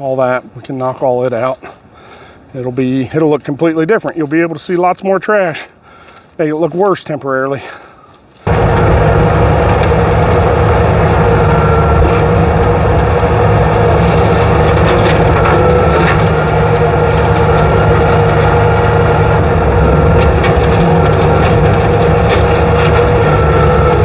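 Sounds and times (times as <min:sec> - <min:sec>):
loud engine drone: 0:08.5 - 0:24.0
steady hum: 0:08.5 - 0:24.0.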